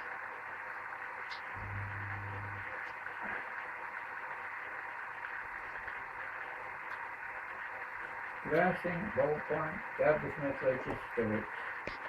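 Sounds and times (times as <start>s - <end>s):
low motor hum: 1.5s - 2.9s.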